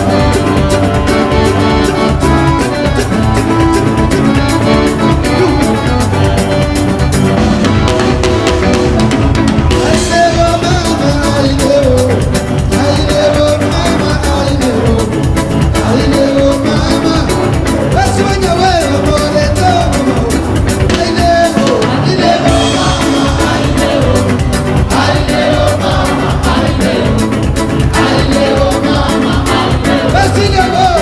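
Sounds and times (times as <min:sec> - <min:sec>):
bass line: 0:00.0 - 0:31.0
fast drum beat: 0:00.0 - 0:31.0
live dance band: 0:00.0 - 0:31.0
lead vocal singing: 0:09.7 - 0:31.0.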